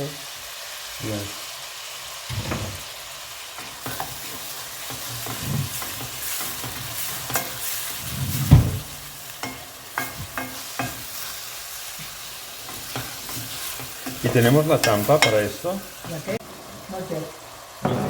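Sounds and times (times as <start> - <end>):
onion sizzling in oil: 0.0 - 18.0
spoon knocking and scraping pan: 2.3 - 3.0, 3.6 - 11.3, 12.0 - 16.2, 17.8 - 18.0.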